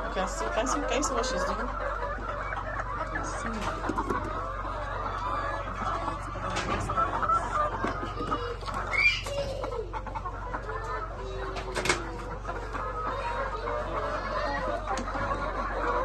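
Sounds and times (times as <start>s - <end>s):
hens clucking and calling: 0.0s - 16.0s
hen squawk: 8.7s - 9.9s.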